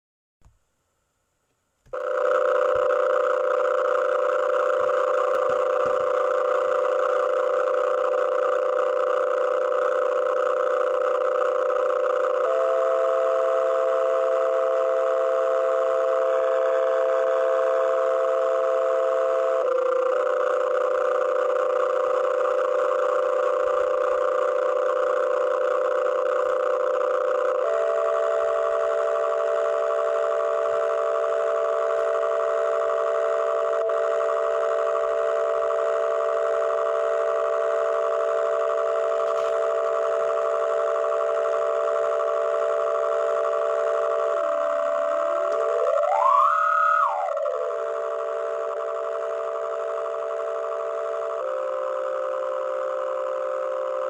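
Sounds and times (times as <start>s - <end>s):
sustained chord of held tones: 22.2s - 54.0s.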